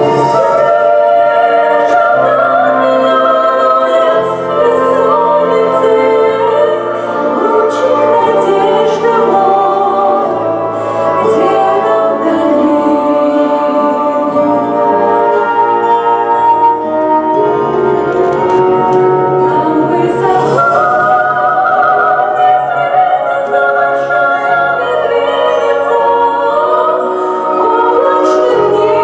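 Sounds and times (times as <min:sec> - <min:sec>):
instrumental accompaniment: 0:00.0 - 0:29.0
person singing: 0:19.4 - 0:29.0.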